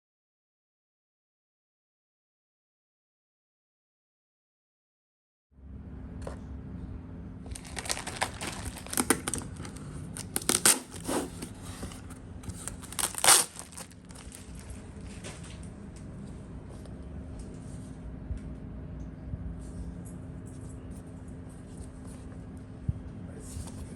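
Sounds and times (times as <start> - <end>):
packaging tearing: 7.5 - 11.8, 12.5 - 14.8
packaging crinkling and rustling: 7.5 - 15.6.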